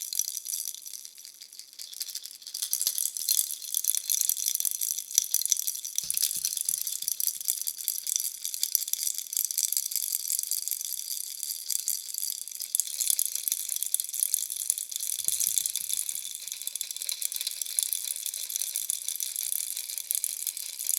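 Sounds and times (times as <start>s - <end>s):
baby rattle shaken: 1.0s - 4.3s, 6.0s - 7.4s, 15.2s - 16.4s.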